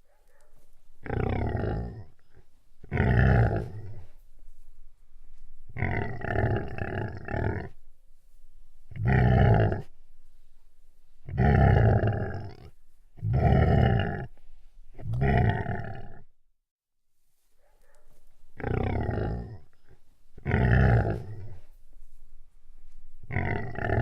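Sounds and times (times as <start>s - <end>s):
deep animal growls: 1.0s - 4.2s, 5.7s - 7.8s, 8.9s - 10.0s, 11.2s - 14.4s, 15.0s - 16.3s, 18.6s - 21.8s, 23.2s - 24.0s.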